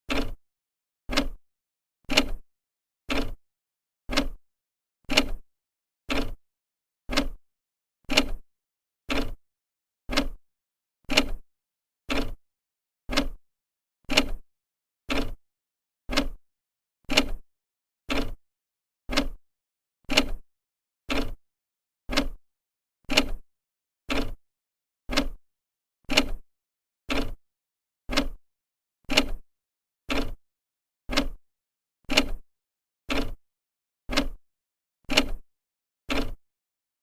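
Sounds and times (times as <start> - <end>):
clock ticking: 1.1 - 1.4, 4.1 - 4.4, 7.1 - 7.4, 10.1 - 10.4, 13.1 - 13.4, 16.1 - 16.4, 19.1 - 19.4, 22.1 - 22.4, 25.1 - 25.4, 28.1 - 28.4, 30.1 - 30.4, 31.1 - 31.4, 33.1 - 33.4, 34.1 - 34.4, 36.1 - 36.4.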